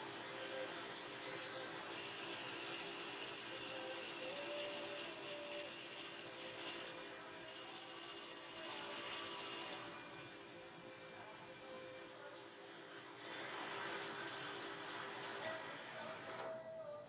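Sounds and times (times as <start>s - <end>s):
faint high whine: 0.0s - 12.2s.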